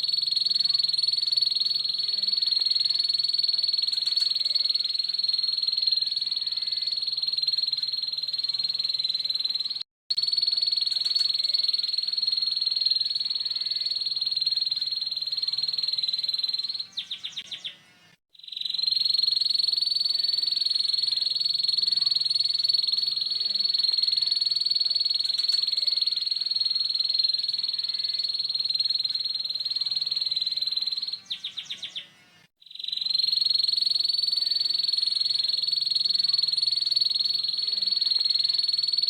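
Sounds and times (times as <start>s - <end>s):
canary singing trill: 0.0s - 39.0s.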